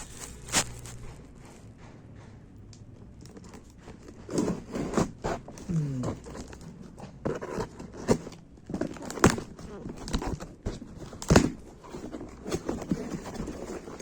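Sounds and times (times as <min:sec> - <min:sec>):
cardboard box being opened: 0:00.0 - 0:01.2, 0:03.3 - 0:14.0.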